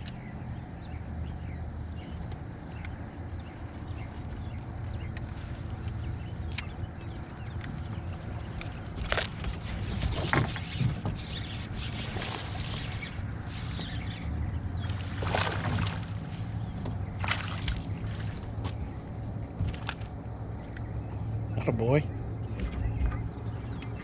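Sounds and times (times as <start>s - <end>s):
low motor hum: 0.0s - 24.0s
water splashing against boat: 6.2s - 18.9s, 19.6s - 20.2s.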